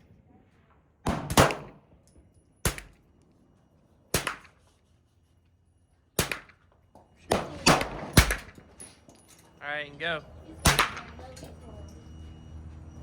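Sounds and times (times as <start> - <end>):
gunshots: 1.0 - 1.8, 4.1 - 4.6, 6.2 - 6.5, 7.3 - 8.6, 10.6 - 11.2.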